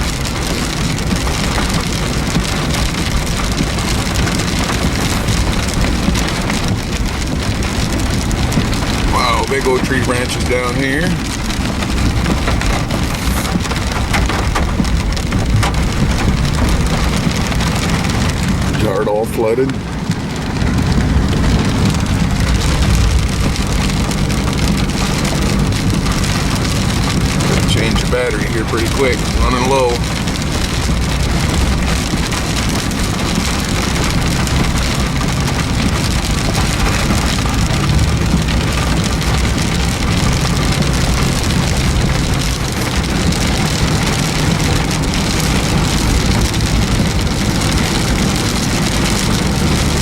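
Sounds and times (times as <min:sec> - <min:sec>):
heavy rain: 0:00.0 - 0:50.0
low rumble: 0:00.0 - 0:50.0.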